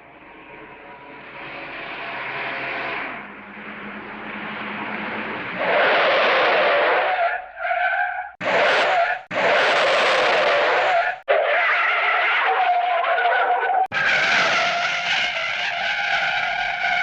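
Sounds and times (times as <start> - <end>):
cartoon tire skid screeches: 5.6 - 17.0.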